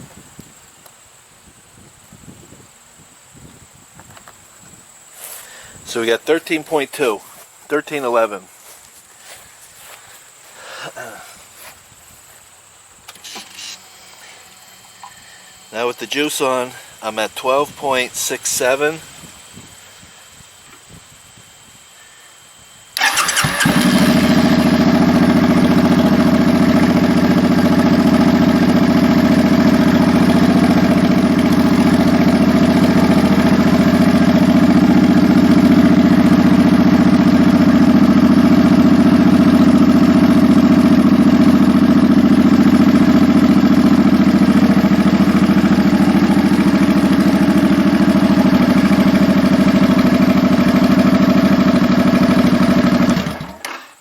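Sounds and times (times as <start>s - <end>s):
motorcycle engine starting and idling: 13.0s - 19.6s, 23.0s - 54.0s.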